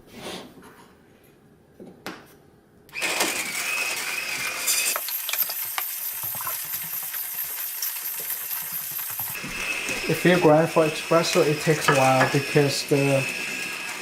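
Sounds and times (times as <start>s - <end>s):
coffee grinder motor whining: 2.9s - 14.0s
coffee beans crackling: 4.5s - 13.2s.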